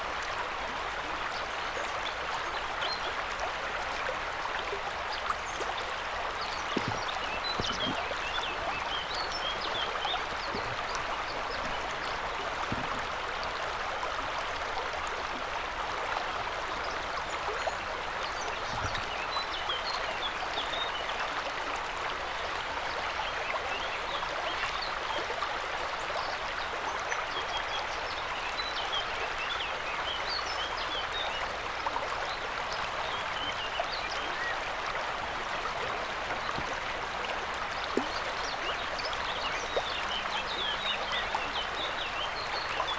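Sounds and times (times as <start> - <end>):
river water rushing: 3.7 - 16.0.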